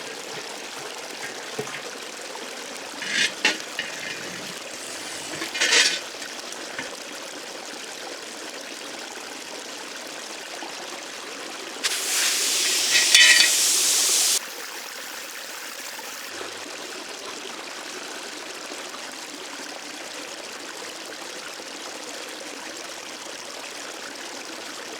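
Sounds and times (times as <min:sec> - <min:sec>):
stream flowing: 0:00.0 - 0:07.0, 0:11.8 - 0:16.4
loud hiss: 0:11.8 - 0:14.5.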